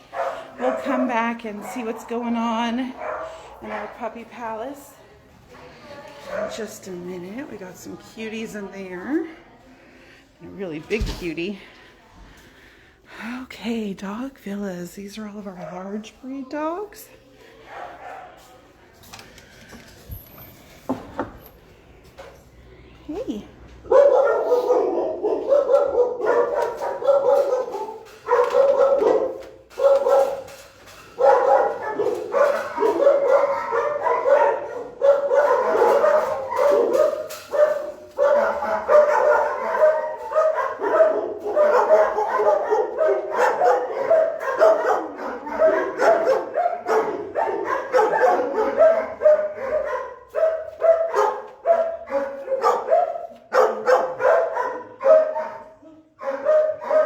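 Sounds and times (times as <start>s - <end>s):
dogs barking and yipping: 0.0s - 4.2s, 23.9s - 57.0s.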